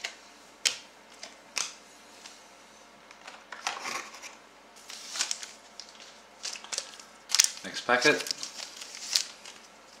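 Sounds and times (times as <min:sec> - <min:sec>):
cards rustling: 0:04.9 - 0:10.0.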